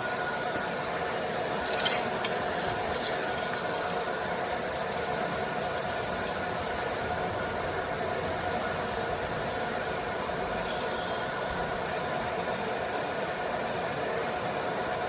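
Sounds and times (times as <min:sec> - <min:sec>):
sharp metallic clinks: 0:01.6 - 0:05.0, 0:10.1 - 0:13.8
welding machine humming: 0:09.5 - 0:14.0.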